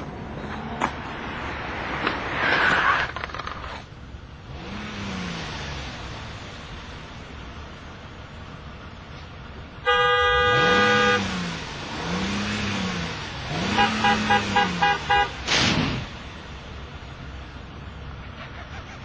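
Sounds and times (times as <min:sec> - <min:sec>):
car horn beeping: 0:09.8 - 0:11.4, 0:13.5 - 0:15.5.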